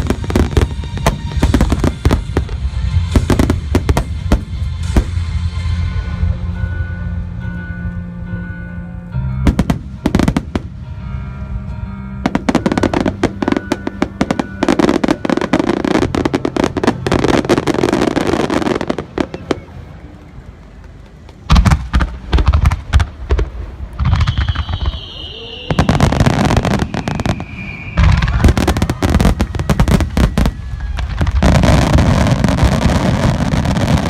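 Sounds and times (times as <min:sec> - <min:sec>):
loud firework bangs: 0:00.0 - 0:05.3, 0:21.5 - 0:34.0
fireworks bursting and crackling: 0:00.0 - 0:06.0, 0:12.3 - 0:34.0
music: 0:00.0 - 0:19.9, 0:21.5 - 0:34.0.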